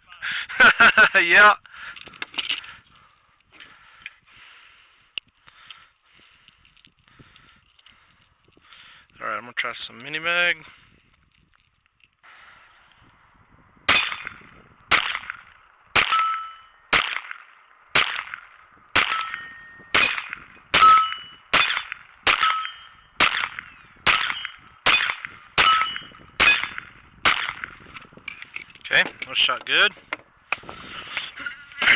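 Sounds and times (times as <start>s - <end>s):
pistol shots with metallic ring: 13.9s - 15.4s, 16.0s - 17.4s, 18.0s - 27.7s.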